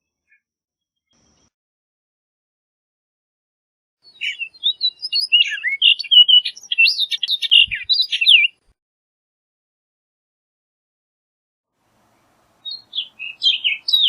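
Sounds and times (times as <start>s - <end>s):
bird singing whistled notes: 4.0s - 8.6s, 12.6s - 14.0s.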